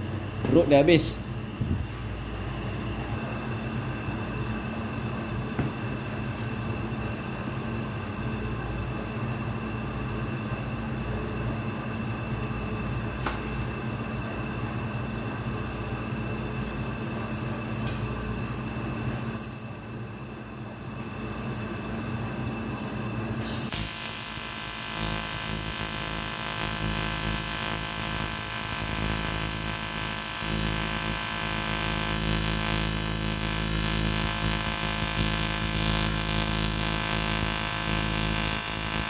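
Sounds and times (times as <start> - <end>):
welding arc buzzing: 23.4 - 39.0.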